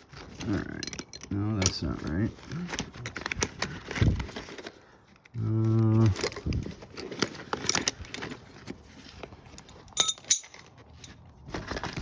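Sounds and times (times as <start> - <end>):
metal hand tools clinking: 9.9 - 11.2.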